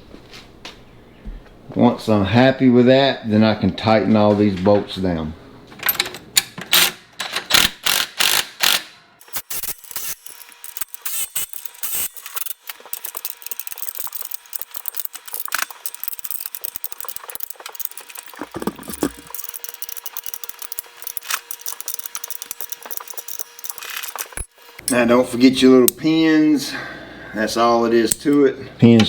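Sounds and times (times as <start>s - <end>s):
ratchet wrench clicking: 7.5s - 25.0s.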